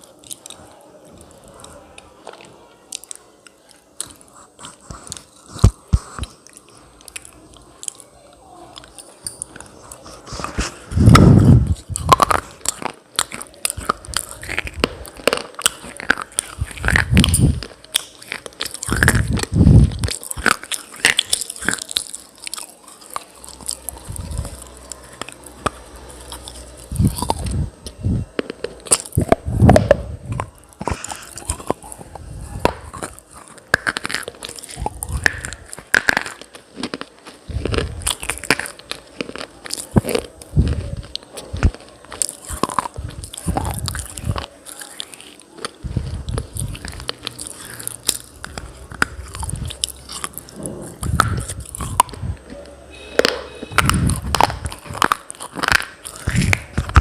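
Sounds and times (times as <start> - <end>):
person chewing brittle clay: 0.0 - 57.0.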